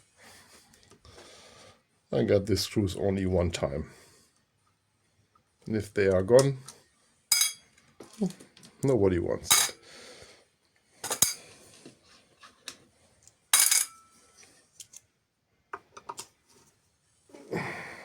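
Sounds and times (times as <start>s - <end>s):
screws and tool clinking on metal: 7.3s - 7.8s, 11.1s - 11.5s, 13.6s - 14.2s.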